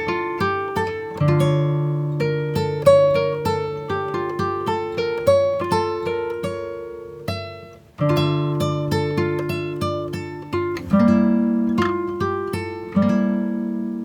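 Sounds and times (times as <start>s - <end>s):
plucked string instrument tune: 0.0s - 14.0s.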